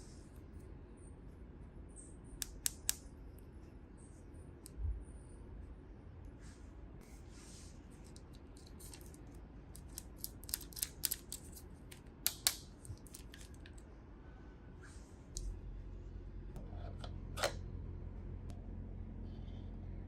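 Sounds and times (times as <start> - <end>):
toy packaging clicks and snips: 8.1 - 13.8.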